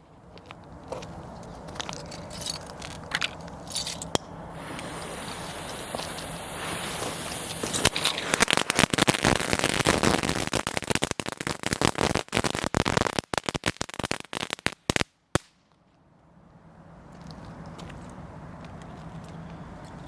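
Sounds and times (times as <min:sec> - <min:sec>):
firework hissing: 0:04.0 - 0:15.0
firework crackling: 0:04.0 - 0:15.6.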